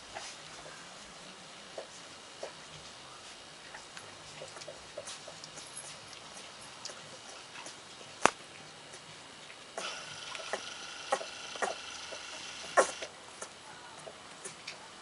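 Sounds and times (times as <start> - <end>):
steady high whine: 9.8 - 13.1.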